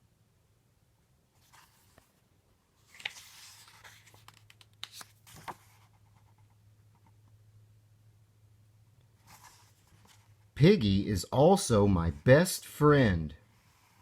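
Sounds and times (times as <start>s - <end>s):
paper rustling: 2.8s - 6.4s.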